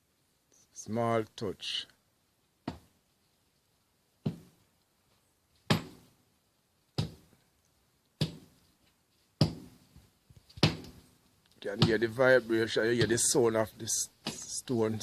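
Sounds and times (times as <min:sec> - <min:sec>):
sledgehammer striking rock: 0:04.2 - 0:04.6, 0:05.7 - 0:06.1, 0:07.0 - 0:07.3, 0:08.2 - 0:08.6, 0:09.4 - 0:09.8, 0:10.6 - 0:11.0, 0:11.8 - 0:12.0, 0:13.0 - 0:13.4.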